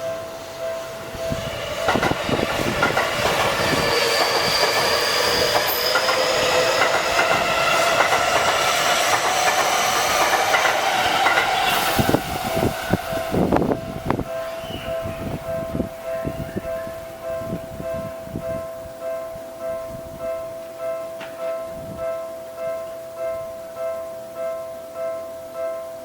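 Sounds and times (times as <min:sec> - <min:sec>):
level crossing warning bell: 0:00.0 - 0:11.5, 0:12.4 - 0:26.0
train motor whine: 0:00.0 - 0:16.7
train wheels clacking on rail joints: 0:00.9 - 0:15.6, 0:21.1 - 0:21.6.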